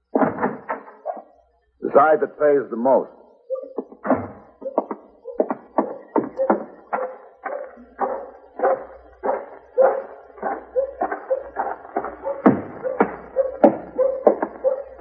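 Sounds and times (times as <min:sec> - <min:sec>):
heavy thumps: 0:00.0 - 0:01.1, 0:03.8 - 0:15.0
boot footsteps walking: 0:03.6 - 0:15.0.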